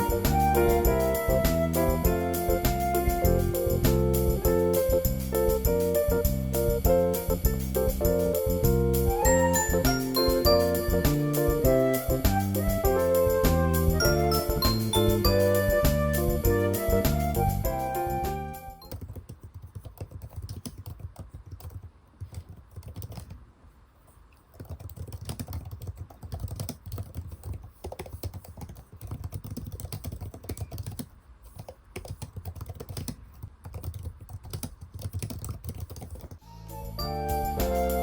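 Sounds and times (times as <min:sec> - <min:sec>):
background music: 0:00.0 - 0:18.9, 0:36.4 - 0:38.0.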